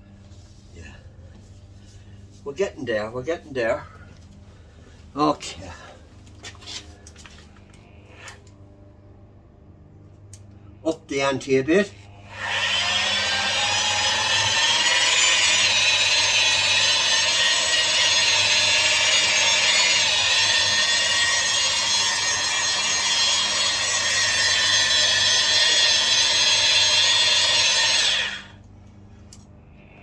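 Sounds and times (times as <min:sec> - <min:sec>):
rotary sander motor whine: 0:11.7 - 0:29.0.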